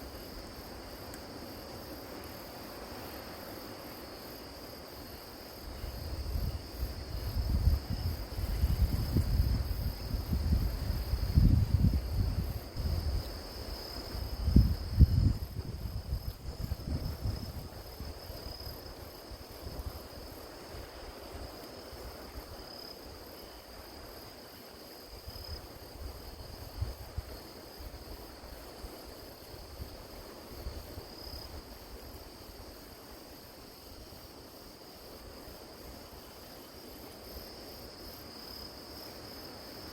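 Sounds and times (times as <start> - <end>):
crickets chirring: 0.0 - 39.9
wind buffeting microphone: 5.7 - 20.3.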